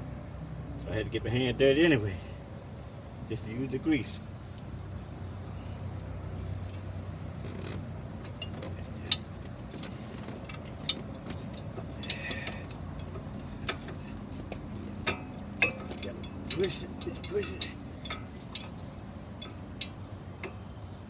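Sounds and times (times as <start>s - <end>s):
steady low hum: 0.0s - 21.0s
metallic clicks and clinks: 5.8s - 21.0s.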